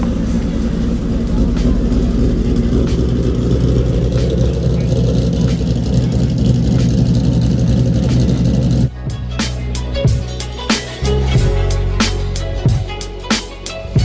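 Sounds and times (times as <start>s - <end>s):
car engine running steadily: 0.0s - 8.9s.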